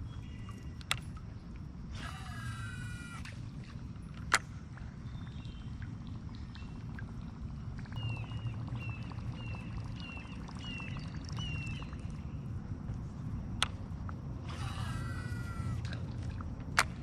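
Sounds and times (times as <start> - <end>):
bird chirping: 8.0 - 12.0.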